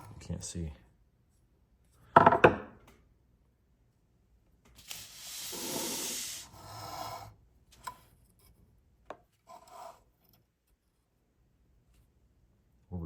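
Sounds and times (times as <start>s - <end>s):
small parts scraping on workbench: 4.8s - 8.6s, 9.4s - 10.4s.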